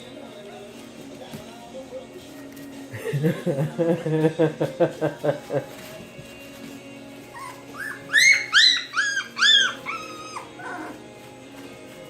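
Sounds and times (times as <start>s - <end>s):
puppies whimpering and squealing: 6.6s - 11.7s.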